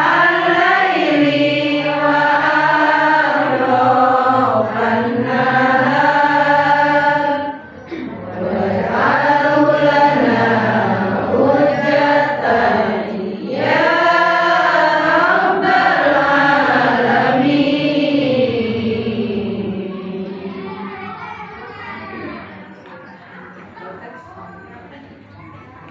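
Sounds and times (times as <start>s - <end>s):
person chanting melodically: 8.4s - 21.0s.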